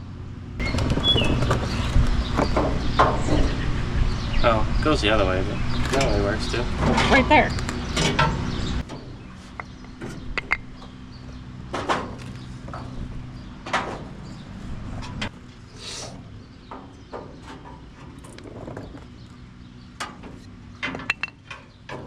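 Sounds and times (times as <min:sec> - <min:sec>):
hand tools knocking on metal: 0:09.5 - 0:11.0, 0:20.8 - 0:22.0.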